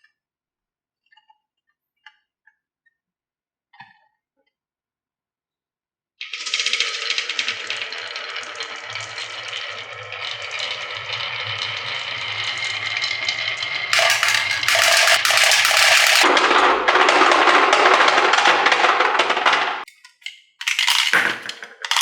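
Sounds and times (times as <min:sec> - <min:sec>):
marbles clattering down wooden track: 0:06.2 - 0:22.0.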